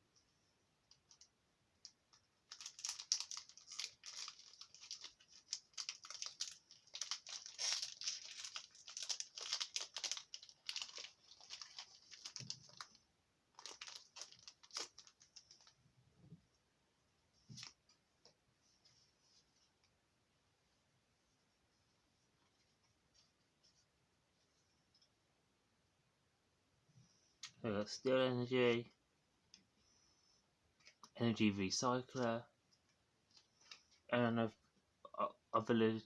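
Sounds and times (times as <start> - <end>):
plastic wrapper crinkling: 0.9 - 15.8, 30.8 - 31.2, 33.2 - 34.1.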